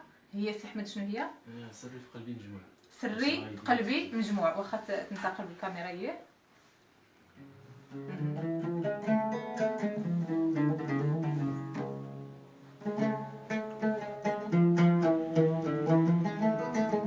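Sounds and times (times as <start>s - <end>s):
plucked string instrument: 7.4s - 17.0s.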